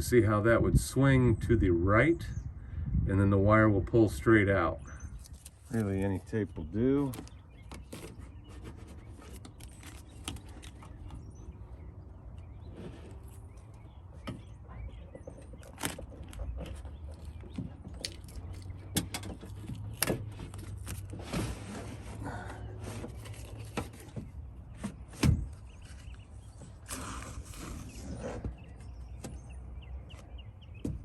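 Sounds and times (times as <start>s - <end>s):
tape tearing off a roll: 25.8s - 28.5s.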